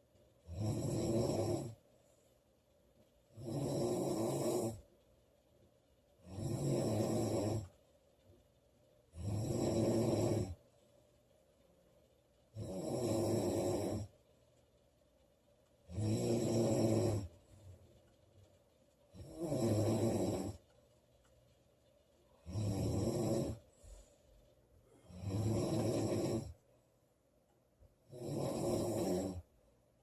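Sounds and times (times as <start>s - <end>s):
woman snoring loudly: 0.5s - 1.8s, 3.4s - 4.8s, 6.2s - 7.7s, 9.1s - 10.6s, 12.6s - 14.1s, 15.9s - 17.3s, 19.2s - 20.6s, 22.4s - 23.6s, 25.0s - 26.6s, 28.1s - 29.5s.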